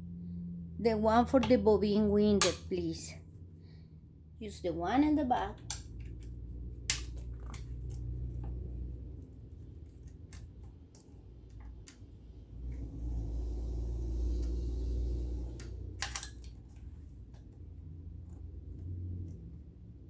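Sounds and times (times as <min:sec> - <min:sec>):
low rumble: 0:00.0 - 0:02.4, 0:05.8 - 0:20.0
screwdriver clicking on metal: 0:15.6 - 0:16.6.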